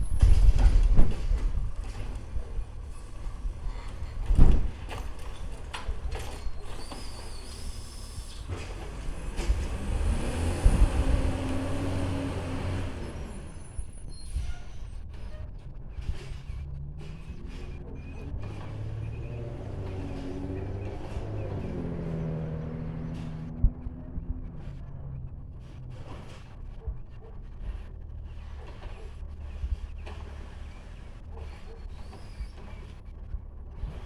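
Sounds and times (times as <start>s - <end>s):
rail vehicle running: 0.0s - 34.0s
high squeal: 6.4s - 8.5s, 12.7s - 16.6s.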